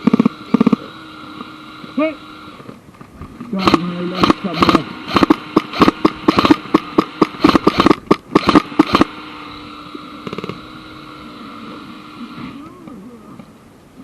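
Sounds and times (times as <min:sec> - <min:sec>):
steady hum: 0:00.0 - 0:14.0
airsoft gun shots: 0:03.6 - 0:09.2.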